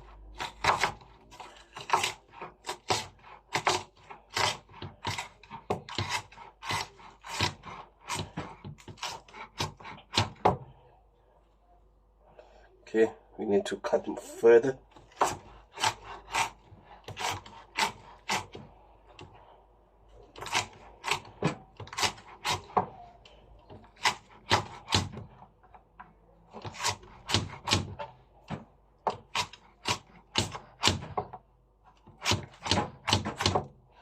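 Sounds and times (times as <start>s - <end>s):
knife chopping on cutting board: 0.4s - 10.7s, 15.0s - 19.3s, 20.3s - 22.9s, 32.1s - 33.7s.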